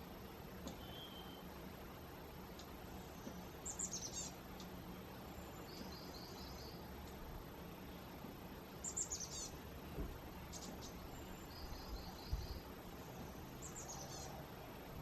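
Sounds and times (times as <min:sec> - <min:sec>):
low background noise: 0:00.0 - 0:15.0
songbirds chirping: 0:00.0 - 0:15.0
buzzy bird trill: 0:10.5 - 0:14.4.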